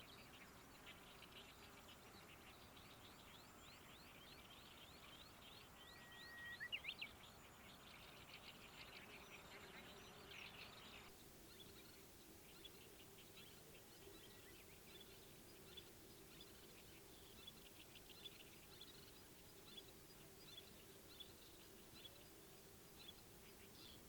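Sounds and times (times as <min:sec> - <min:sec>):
small birds chirping: 0:00.0 - 0:24.0
thin bird whistle: 0:05.8 - 0:07.0.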